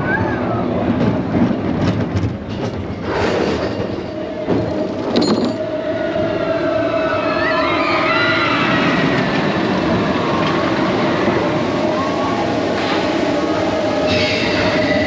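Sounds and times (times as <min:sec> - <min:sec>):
roller coaster rumbling on track: 0:00.0 - 0:15.0
wheels squealing: 0:06.5 - 0:15.0.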